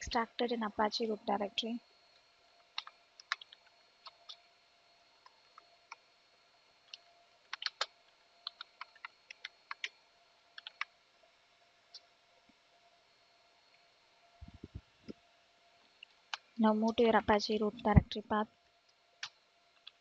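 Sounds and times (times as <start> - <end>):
keyboard keys clicking: 2.8 - 4.4, 7.5 - 9.9, 10.6 - 10.9.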